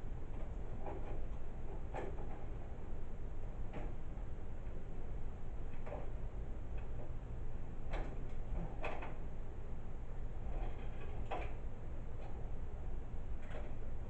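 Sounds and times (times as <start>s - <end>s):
steady low hum: 0.0s - 14.0s
computer parts knocking and scraping: 0.3s - 2.6s, 7.9s - 9.2s, 10.5s - 11.6s, 13.4s - 13.8s.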